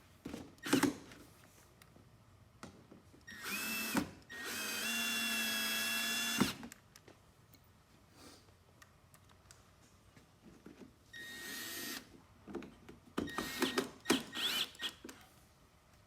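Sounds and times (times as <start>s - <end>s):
power drill driving screws: 3.3s - 6.6s, 11.2s - 12.1s, 13.3s - 15.0s.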